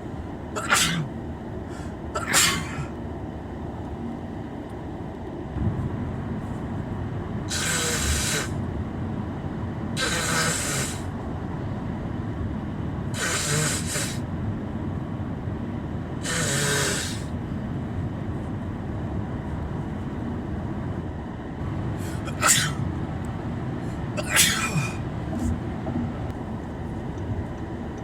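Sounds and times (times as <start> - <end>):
car cabin rumble: 0.0 - 28.0
man sniffing through stuffed nose: 7.5 - 8.5, 10.0 - 11.1, 13.2 - 14.2, 16.2 - 17.3.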